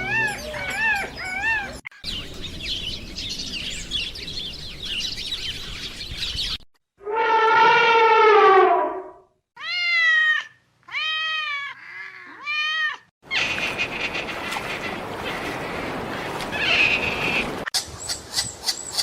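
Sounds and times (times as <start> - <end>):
cat meowing: 9.6 - 13.1.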